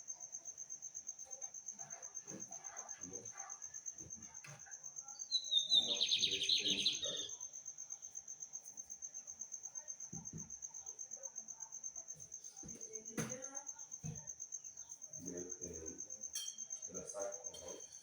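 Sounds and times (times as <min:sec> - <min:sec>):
high-pitched insect trill: 0:00.0 - 0:18.0
bird singing trilled phrase: 0:05.2 - 0:07.4.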